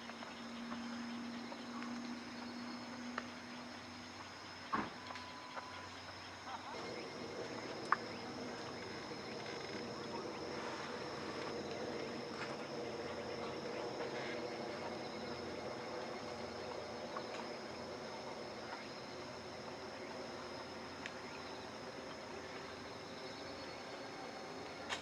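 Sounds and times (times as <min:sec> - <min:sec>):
insect chorus trilling: 0:00.0 - 0:25.0
faint clicks: 0:07.6 - 0:09.9, 0:20.9 - 0:21.3.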